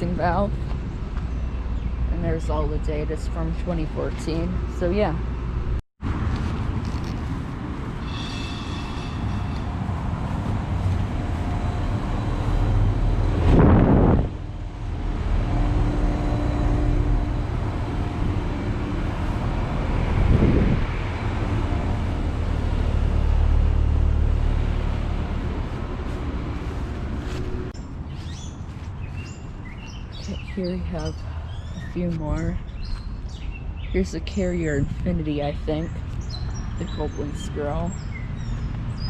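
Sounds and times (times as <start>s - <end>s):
condenser fans rushing: 6.5s - 27.7s
loud bursts of rushing noise: 6.6s - 27.7s
compressor hum: 7.2s - 33.4s.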